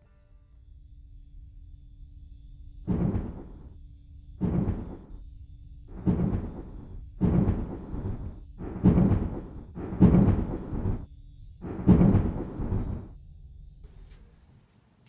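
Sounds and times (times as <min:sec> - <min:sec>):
faint steady hum: 0:00.0 - 0:15.0
deep rumbling booms: 0:02.7 - 0:13.9.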